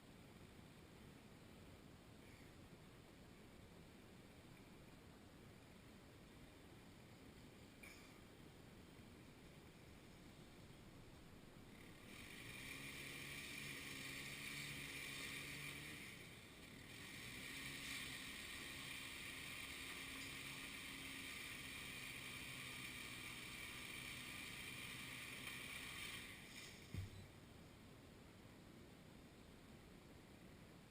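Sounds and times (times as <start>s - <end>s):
faint engine running: 11.6s - 27.3s.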